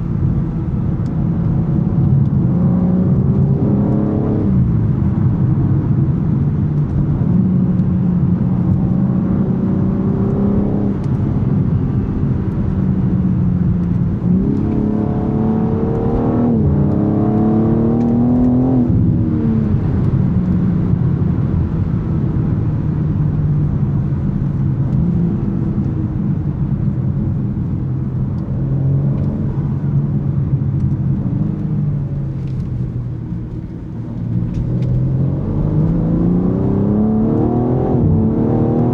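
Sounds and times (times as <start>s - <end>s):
car engine accelerating: 0.0s - 38.9s.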